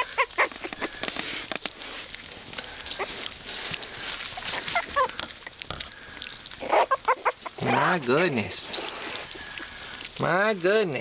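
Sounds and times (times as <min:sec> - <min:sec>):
puppies squeaking: 0:00.0 - 0:01.0, 0:04.3 - 0:05.2, 0:06.6 - 0:08.0.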